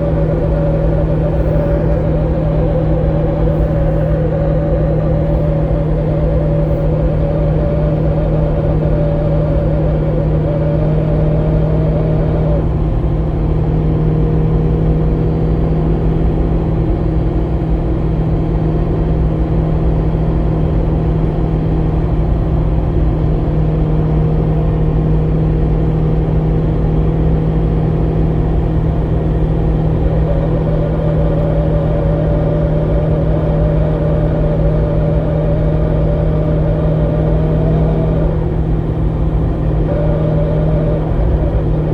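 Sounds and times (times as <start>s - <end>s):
high whine: 0.0s - 13.2s, 28.8s - 41.9s
car driving low drone: 0.0s - 25.8s, 27.4s - 41.9s.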